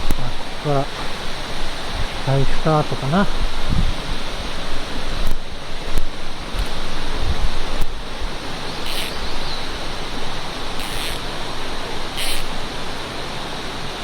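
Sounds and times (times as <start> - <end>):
mountain stream rushing: 0.0 - 14.0
short high-pitched swishes: 8.9 - 9.2, 10.8 - 11.3, 12.2 - 12.6.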